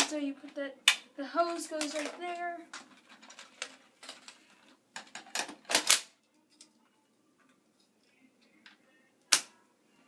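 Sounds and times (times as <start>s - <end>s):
plastic parts clicking and knocking: 0.0s - 6.8s.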